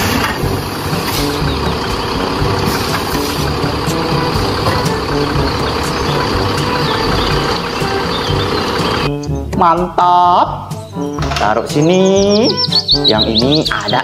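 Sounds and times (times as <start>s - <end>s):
truck engine idling: 0.0s - 9.2s
background music: 0.0s - 14.0s.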